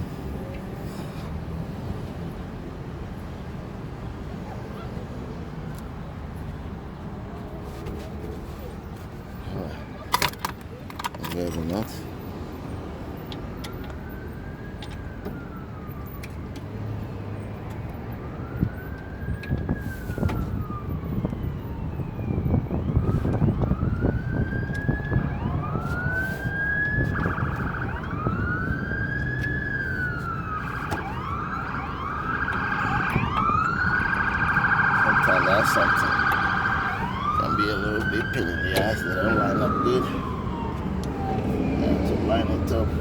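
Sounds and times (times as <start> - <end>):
emergency sirens wailing: 9.4 - 43.0.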